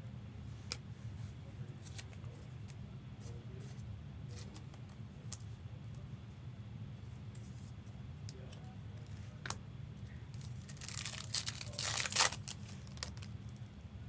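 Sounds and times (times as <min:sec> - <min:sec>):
low steady hum: 0:00.0 - 0:14.0
card pack wrapper tearing: 0:10.4 - 0:13.4.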